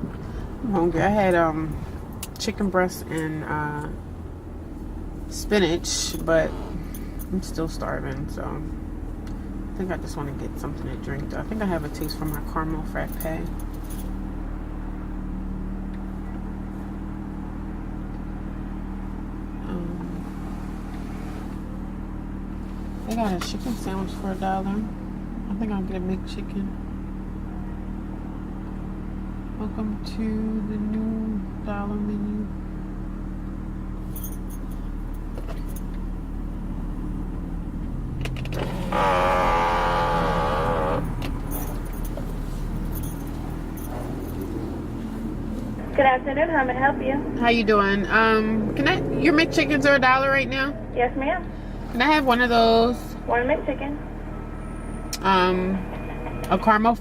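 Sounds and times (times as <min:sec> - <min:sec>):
car engine humming: 0:00.0 - 0:57.0
loud wavering tone: 0:38.8 - 0:41.2.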